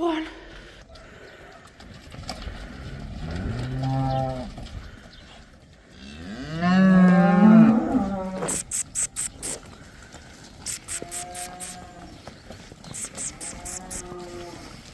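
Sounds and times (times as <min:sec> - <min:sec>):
cattle mooing: 0:02.8 - 0:04.5, 0:06.0 - 0:09.6, 0:10.6 - 0:12.1, 0:13.0 - 0:14.7.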